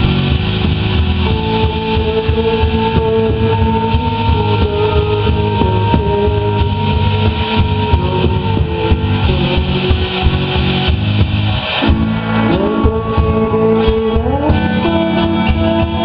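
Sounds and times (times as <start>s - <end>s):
bass guitar: 0.0s - 16.0s
drums: 0.0s - 16.0s
electric guitar: 0.0s - 16.0s.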